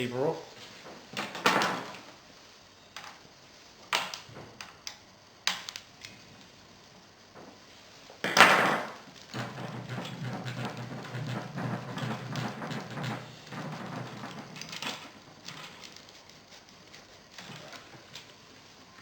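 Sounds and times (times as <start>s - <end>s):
bicycle parts rattling and scraping: 8.3s - 18.4s.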